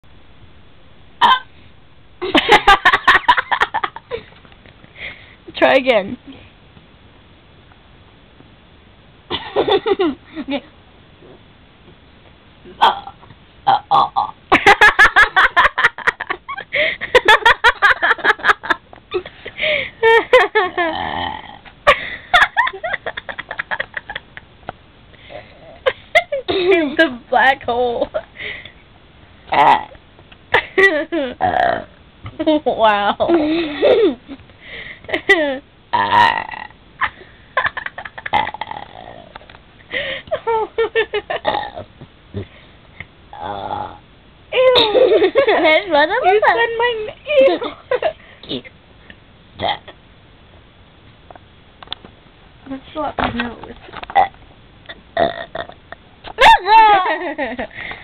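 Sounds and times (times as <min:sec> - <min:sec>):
person burping: 0:01.2 - 0:01.5, 0:12.7 - 0:14.4, 0:20.8 - 0:21.7, 0:29.5 - 0:30.0, 0:31.4 - 0:31.9, 0:35.9 - 0:36.8, 0:38.3 - 0:39.4, 0:41.4 - 0:42.5, 0:43.3 - 0:44.0, 0:49.6 - 0:50.0, 0:54.2 - 0:55.8
person making vocal noises: 0:43.3 - 0:44.0.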